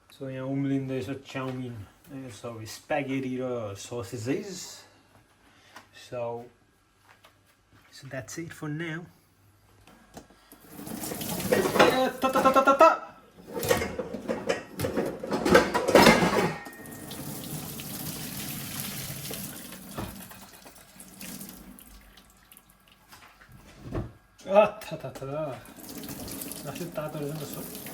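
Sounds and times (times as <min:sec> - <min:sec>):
water running into a sink: 0:10.6 - 0:12.5, 0:16.6 - 0:23.1, 0:25.6 - 0:27.9.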